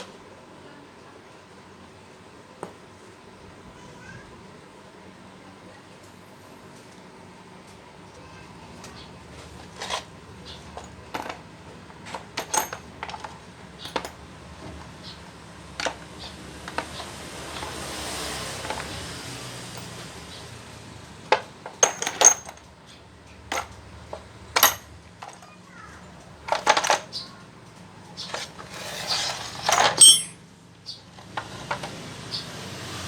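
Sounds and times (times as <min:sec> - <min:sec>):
steel parts clinking and knocking: 0:09.6 - 0:14.2, 0:21.3 - 0:22.7, 0:23.5 - 0:25.4, 0:26.5 - 0:27.1, 0:28.3 - 0:30.4.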